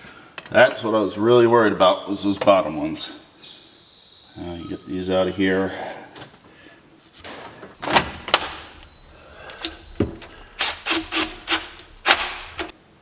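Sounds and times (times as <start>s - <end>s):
short tool strokes: 7.8s - 12.7s.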